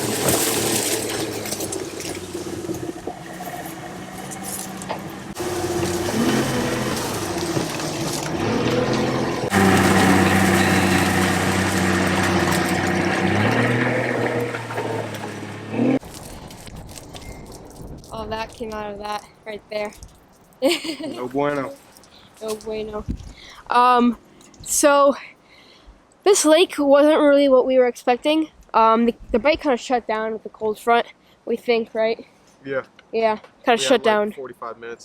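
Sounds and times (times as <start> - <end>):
boat motor running over water: 0.0 - 16.0.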